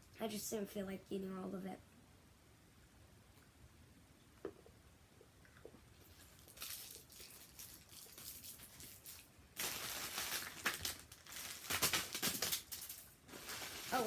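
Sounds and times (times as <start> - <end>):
candy wrapper crinkling: 6.1 - 14.0.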